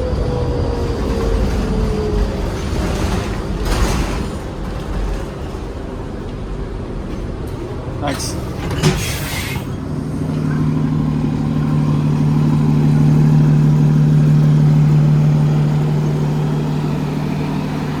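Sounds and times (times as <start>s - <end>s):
bus diesel engine hum: 0.0s - 18.0s.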